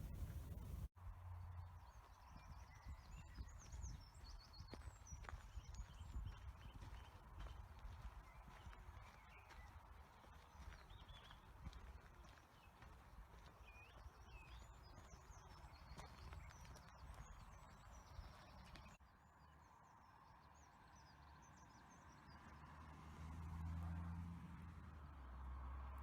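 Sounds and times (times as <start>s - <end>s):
quiet countryside background: 0.0s - 26.0s
small birds chirping: 1.4s - 19.8s.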